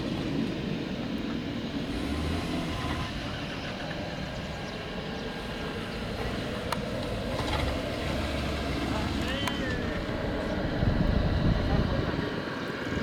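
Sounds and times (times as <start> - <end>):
turboprop engine idling: 0.0 - 13.0.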